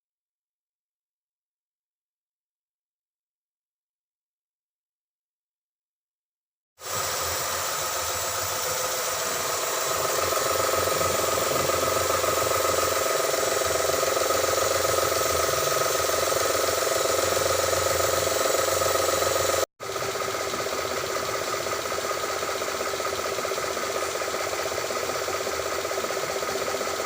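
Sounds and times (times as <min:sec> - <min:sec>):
car engine idling: 0:07.0 - 0:27.0.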